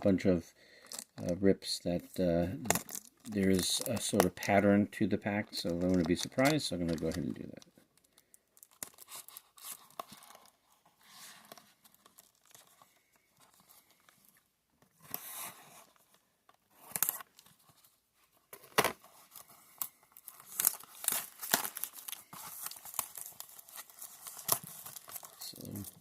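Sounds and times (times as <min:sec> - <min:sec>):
foil packs crinkling: 0:05.2 - 0:10.5, 0:19.2 - 0:26.0.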